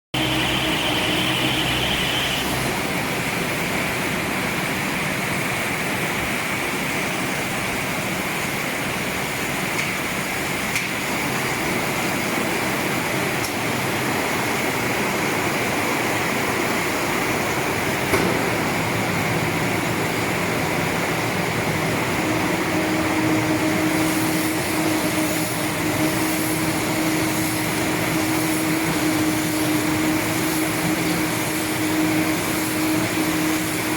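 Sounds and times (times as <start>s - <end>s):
steady hum: 0.2s - 33.9s.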